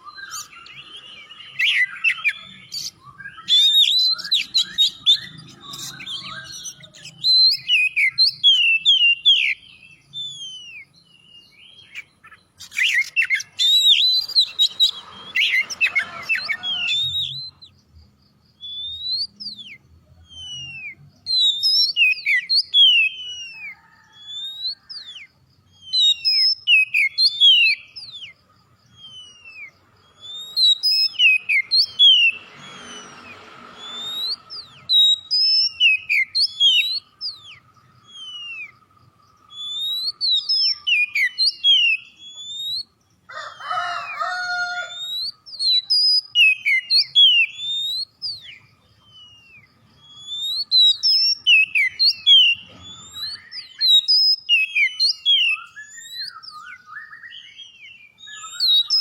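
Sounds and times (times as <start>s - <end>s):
bird singing whistled notes: 0.0s - 59.0s
harsh rasping bird call: 11.9s - 17.6s, 29.2s - 38.8s, 43.3s - 56.8s.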